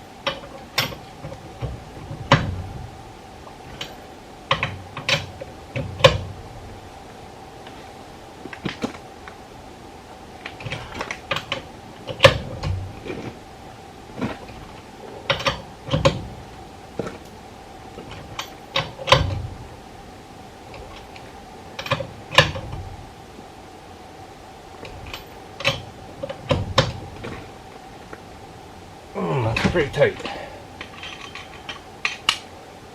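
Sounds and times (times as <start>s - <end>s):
faint steady hum: 0.0s - 32.9s.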